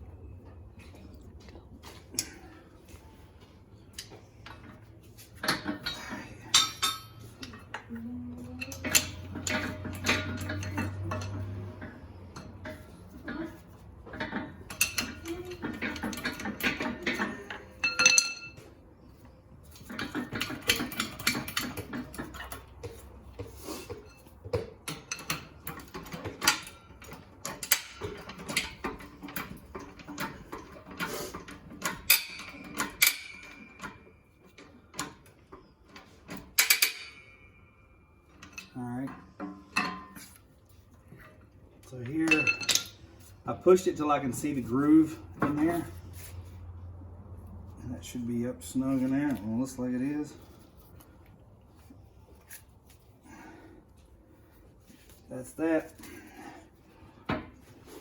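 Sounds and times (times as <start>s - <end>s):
metal tools clinking: 4.0s - 46.3s.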